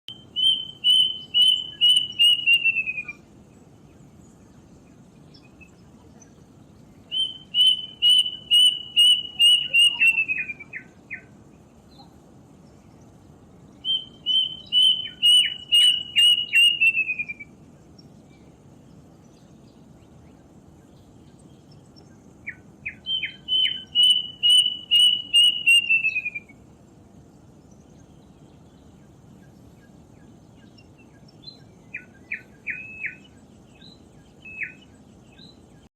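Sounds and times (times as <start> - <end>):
cuckoo singing: 0.1 - 3.2, 7.1 - 11.4, 13.8 - 17.6, 22.5 - 26.6, 32.0 - 33.4.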